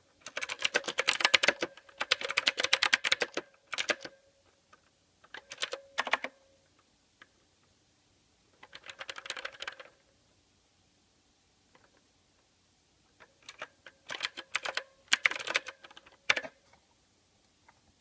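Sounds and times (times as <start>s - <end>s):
mechanical keyboard key clicks: 0.2s - 4.2s, 5.3s - 6.4s, 13.4s - 16.6s.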